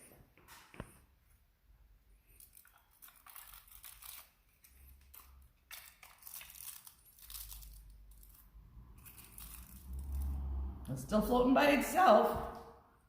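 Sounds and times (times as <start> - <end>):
aluminium foil crinkling: 2.2 - 10.4.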